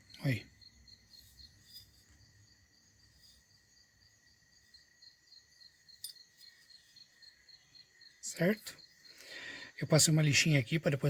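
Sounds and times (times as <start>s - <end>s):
insect chirping: 0.0s - 11.0s.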